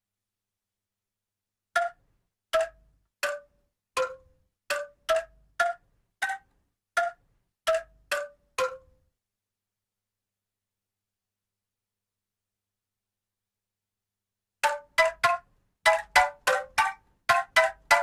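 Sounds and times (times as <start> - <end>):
bamboo angklung notes: 14.6 - 18.0.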